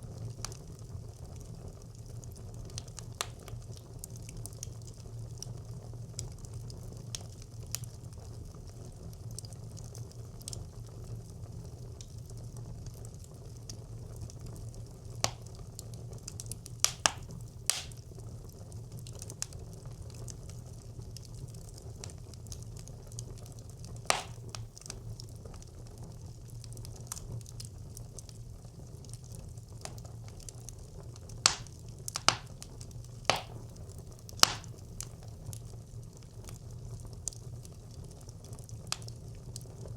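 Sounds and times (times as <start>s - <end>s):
fire crackling and popping: 0.1s - 39.9s
fire rumbling in stove: 24.0s - 34.7s.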